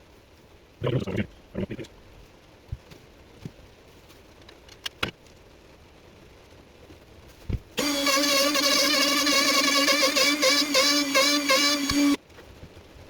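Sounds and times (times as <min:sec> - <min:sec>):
wood router motor whining: 0:07.8 - 0:12.2.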